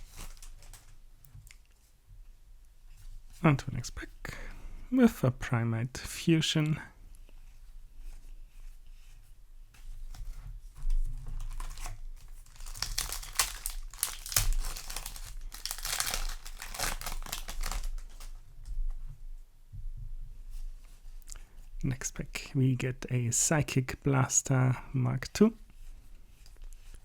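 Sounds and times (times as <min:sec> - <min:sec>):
foil wrapper crinkling and tearing: 0:00.0 - 0:01.0, 0:11.2 - 0:18.4.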